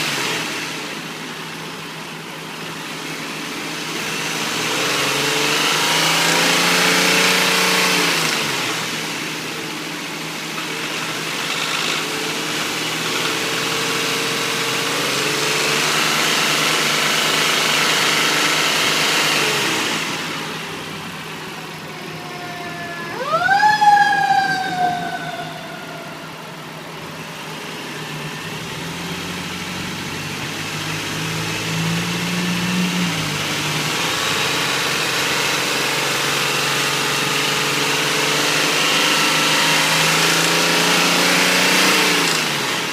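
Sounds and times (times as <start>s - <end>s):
car engine revving: 0.0s - 42.9s
whooping tone sweeping: 21.2s - 28.5s.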